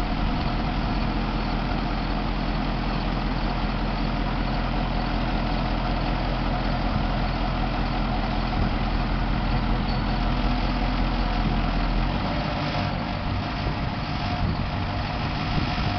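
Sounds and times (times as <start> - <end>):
truck engine idling: 0.0 - 15.9.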